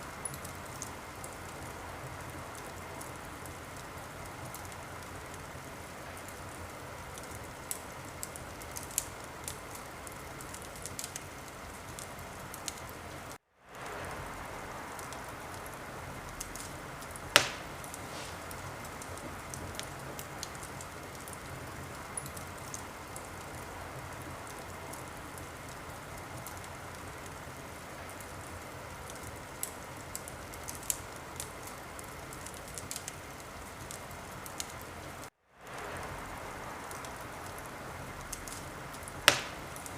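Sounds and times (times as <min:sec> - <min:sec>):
wood fire crackling: 0:00.0 - 0:39.9
loud pop from fire: 0:17.3 - 0:19.9, 0:39.2 - 0:39.9.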